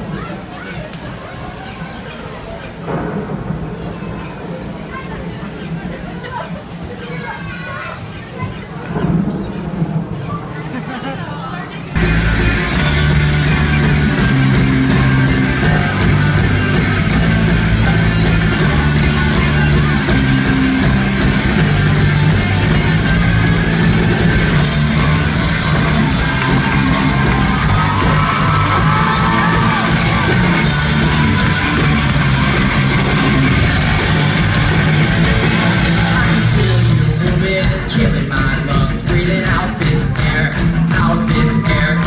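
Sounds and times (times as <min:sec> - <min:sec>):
live rock band playing: 0:12.0 - 0:42.0.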